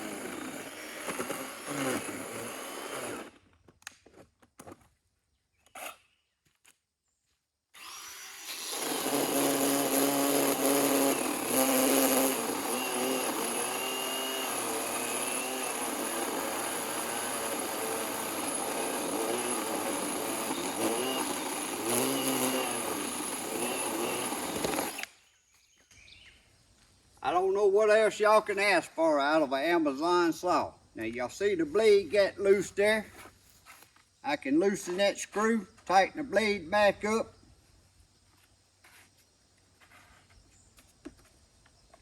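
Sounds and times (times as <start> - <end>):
electric chainsaw cutting wood: 0.0 - 3.5, 7.7 - 25.2.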